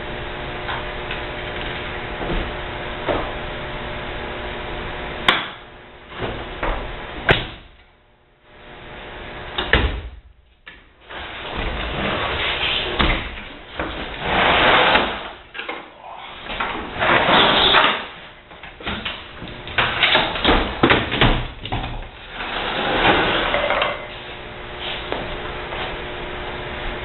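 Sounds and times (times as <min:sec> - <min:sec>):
dishwasher parts scraping and sliding: 0:13.9 - 0:15.7, 0:16.6 - 0:18.2, 0:22.2 - 0:24.2.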